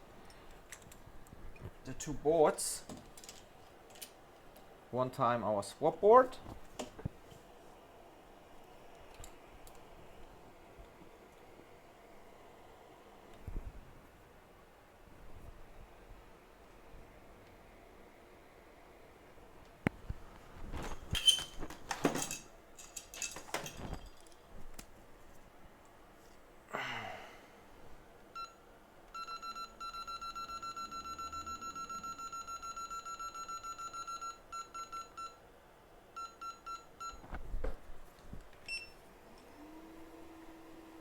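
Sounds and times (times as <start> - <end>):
tools and parts clattering: 20.7 - 24.5.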